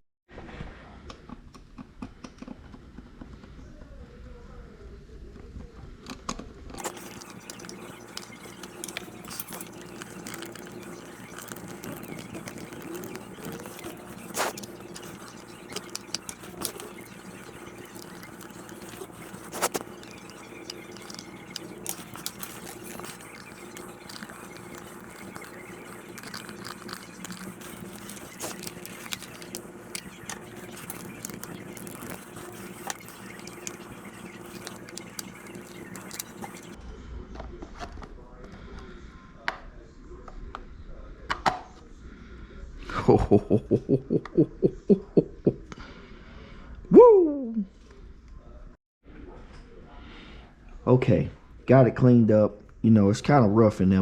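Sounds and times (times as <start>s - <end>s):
clicks and scrapes on plastic: 6.8s - 36.8s.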